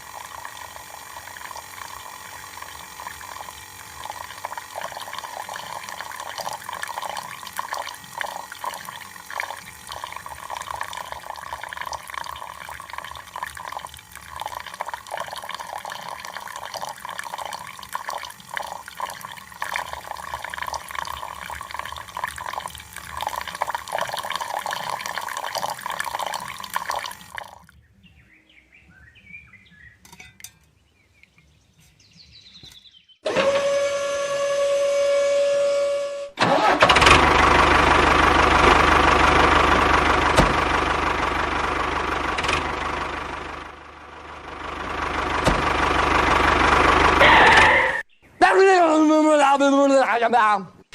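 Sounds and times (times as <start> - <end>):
water pouring and splashing: 0.0 - 27.7.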